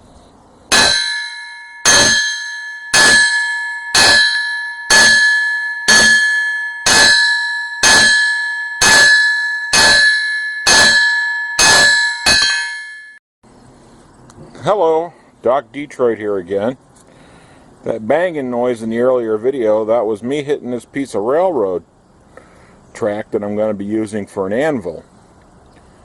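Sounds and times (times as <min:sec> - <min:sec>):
hammer ringing on steel track: 0:00.7 - 0:13.2.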